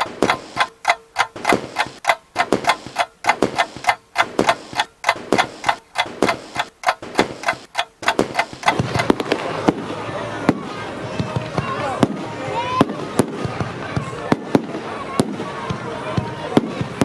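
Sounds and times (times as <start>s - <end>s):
clock ticking: 0.0s - 9.2s.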